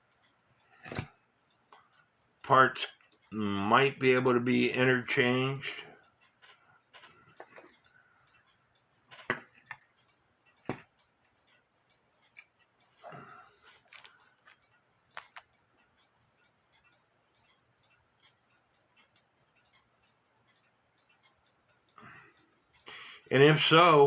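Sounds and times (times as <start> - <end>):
faint ticks: 0.0 - 3.4, 4.4 - 24.0
small parts clicking and knocking: 0.1 - 2.1, 6.2 - 22.8.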